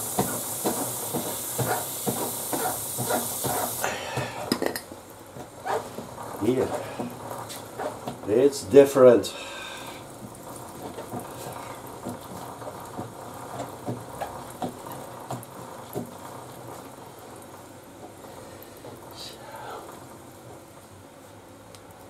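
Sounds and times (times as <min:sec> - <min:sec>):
faint hiss: 0:18.3 - 0:20.1.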